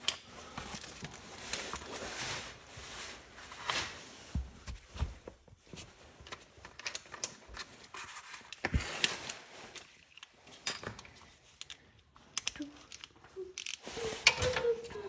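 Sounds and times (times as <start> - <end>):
metal tools clinking and scraping: 8.4 - 11.7.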